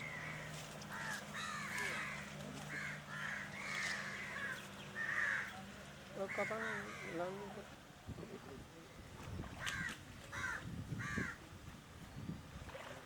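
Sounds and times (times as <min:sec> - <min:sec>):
crows cawing: 0:00.0 - 0:05.6, 0:06.2 - 0:07.3, 0:09.6 - 0:11.4.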